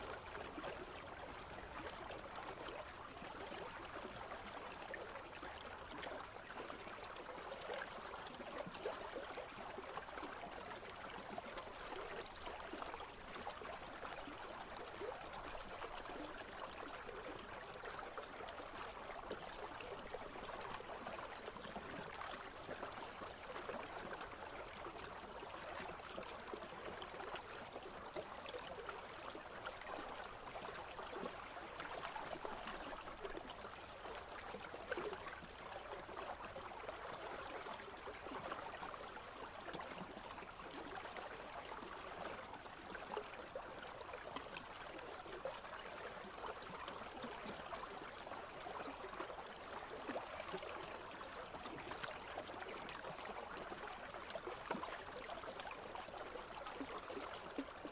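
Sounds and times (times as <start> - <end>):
stream flowing over stones: 0.0 - 57.9.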